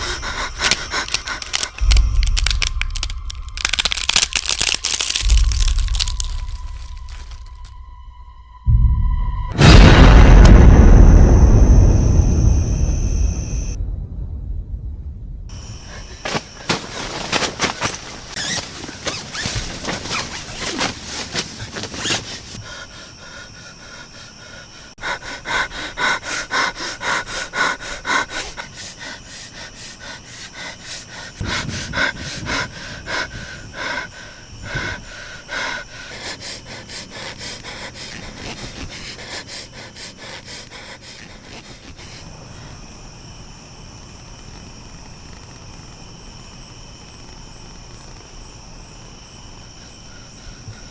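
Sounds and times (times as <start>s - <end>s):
person panting heavily: 0.0s - 2.0s, 22.4s - 42.2s
crickets chirping: 0.0s - 50.9s.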